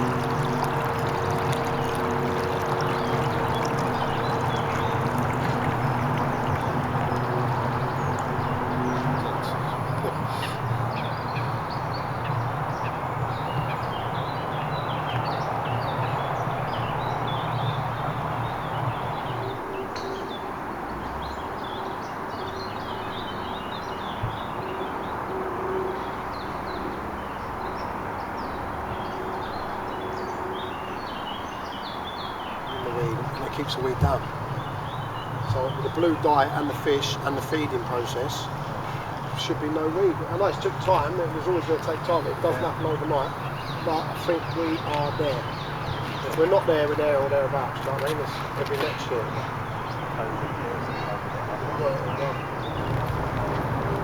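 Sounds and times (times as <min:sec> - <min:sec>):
low steady hum: 0:00.0 - 0:10.7
small birds chirping: 0:00.0 - 0:20.4, 0:28.4 - 0:54.0.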